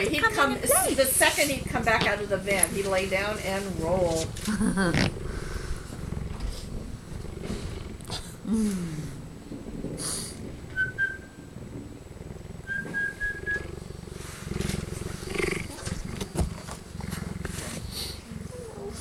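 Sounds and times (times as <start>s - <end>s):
cheetah purring: 0.0s - 19.0s
high whistle-like tones: 10.7s - 11.4s, 12.7s - 13.6s.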